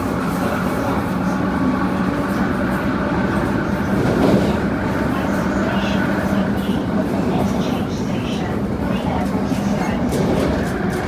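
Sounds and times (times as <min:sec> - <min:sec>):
train running rumble: 0:00.0 - 0:11.0.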